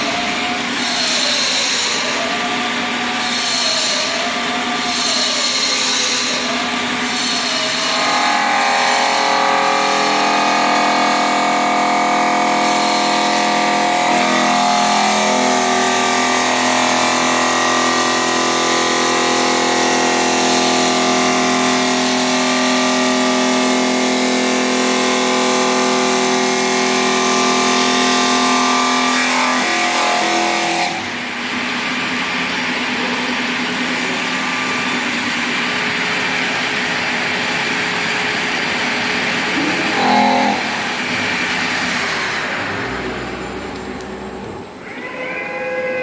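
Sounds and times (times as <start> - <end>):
stone-cutting machine whining: 0.0 - 45.4.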